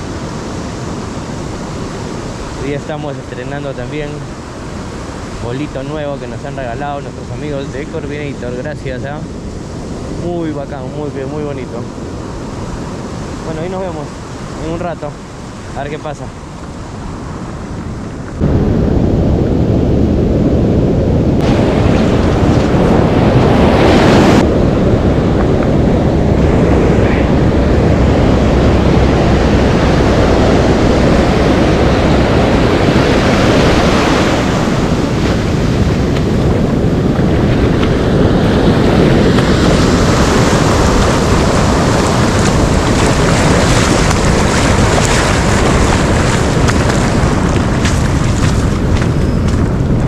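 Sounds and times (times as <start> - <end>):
ocean surf washing on shore: 0.0 - 50.0
wind buffeting microphone: 0.0 - 50.0.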